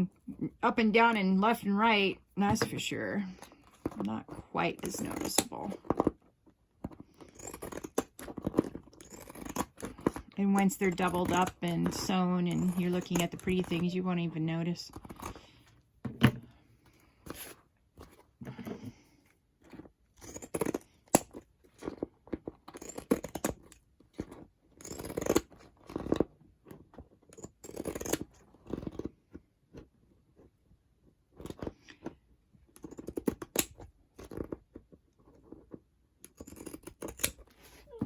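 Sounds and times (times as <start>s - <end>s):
scissors cutting paper: 2.5s - 6.2s, 7.2s - 14.3s, 35.5s - 38.0s.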